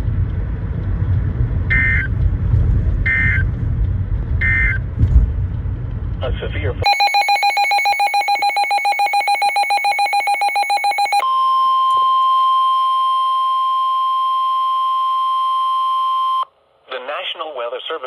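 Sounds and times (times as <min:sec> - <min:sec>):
rapid electronic beeping: 0:06.8 - 0:11.2
steady alarm tone: 0:06.8 - 0:11.8.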